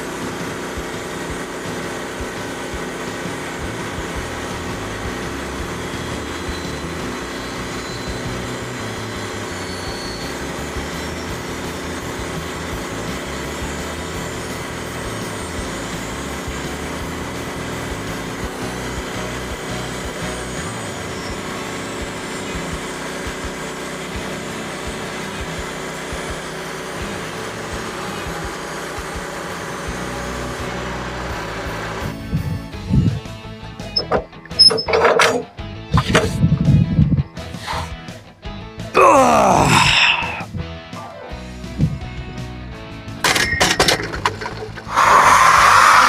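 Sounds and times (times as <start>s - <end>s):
band sawmill running: 0.0s - 46.0s
band blade whirring hiss: 37.4s - 38.1s, 44.8s - 46.0s.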